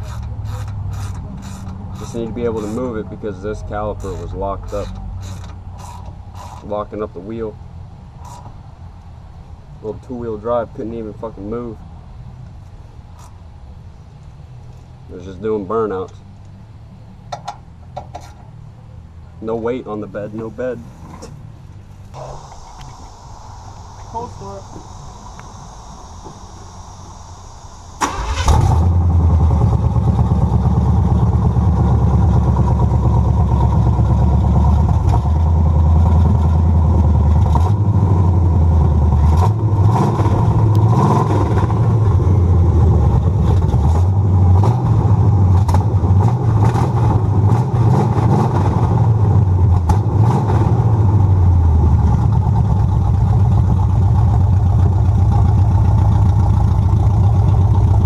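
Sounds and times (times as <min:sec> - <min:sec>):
pickup engine cranking and running: 0:00.0 - 0:06.9, 0:24.9 - 0:58.0.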